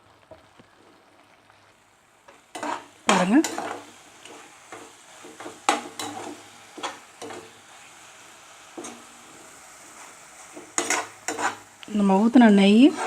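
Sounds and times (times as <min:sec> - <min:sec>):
faint sizzle of ghee: 0:00.0 - 0:13.0
spoon scraping a pan: 0:02.3 - 0:08.0, 0:08.6 - 0:13.0.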